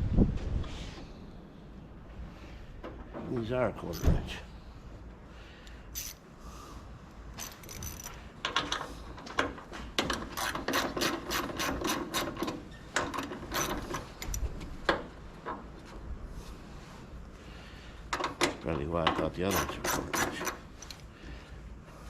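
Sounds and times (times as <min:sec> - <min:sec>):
ratchet wrench clicking: 0:05.9 - 0:06.2, 0:07.4 - 0:08.7.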